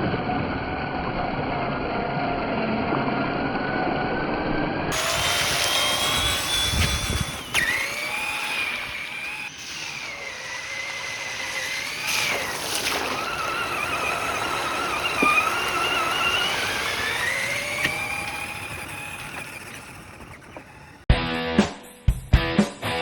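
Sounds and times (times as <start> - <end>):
electric motor whining: 0.0 - 21.0
tyres rushing: 4.9 - 21.1.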